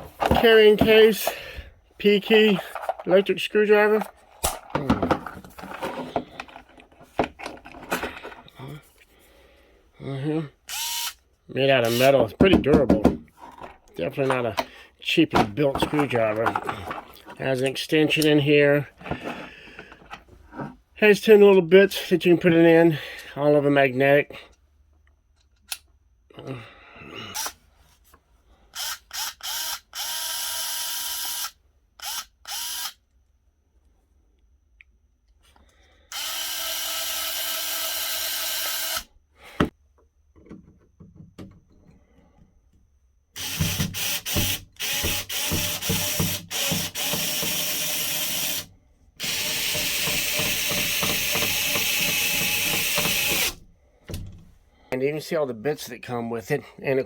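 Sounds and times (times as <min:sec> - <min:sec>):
electric screwdriver motor running: 0:10.7 - 0:11.2, 0:28.8 - 0:33.0, 0:36.1 - 0:39.1, 0:43.4 - 0:53.6.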